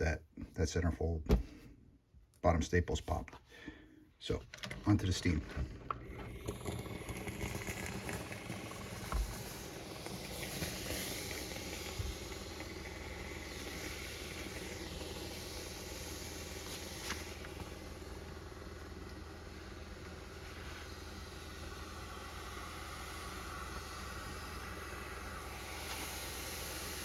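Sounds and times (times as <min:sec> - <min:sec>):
steamer hissing: 0:04.7 - 0:27.0.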